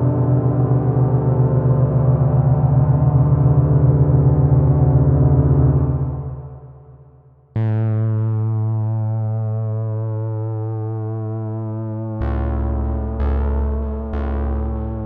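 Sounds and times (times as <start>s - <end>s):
sustained wavering synth tone: 0.0s - 6.9s
deep synth note: 0.0s - 15.0s
low synth drone: 0.0s - 15.0s.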